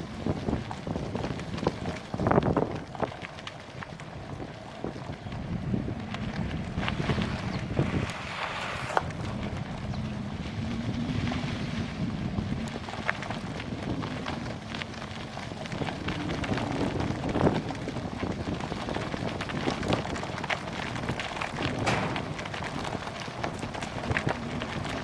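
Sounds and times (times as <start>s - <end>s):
wind buffeting microphone: 0.0s - 25.0s
bike clicks and knocks: 12.8s - 25.0s.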